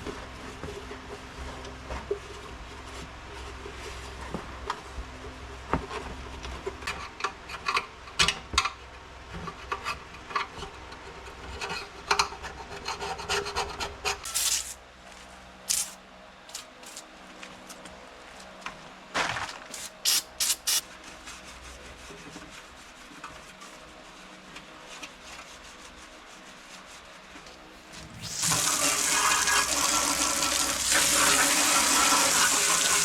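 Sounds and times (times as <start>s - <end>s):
hand scraping on metal: 15.7s - 17.0s.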